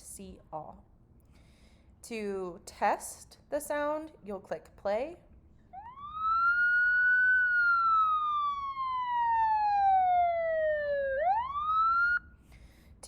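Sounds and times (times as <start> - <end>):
police siren wail: 5.8 - 12.3.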